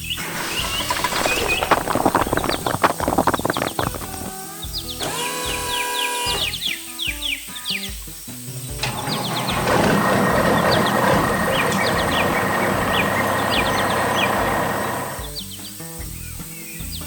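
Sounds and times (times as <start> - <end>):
heavy machine engine running: 0.0 - 4.2, 8.8 - 15.3
birds chirping: 0.0 - 17.0.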